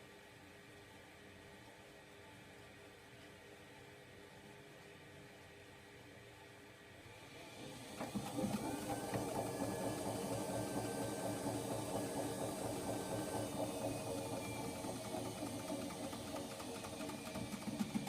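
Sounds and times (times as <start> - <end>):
washing machine spinning: 7.2 - 18.0.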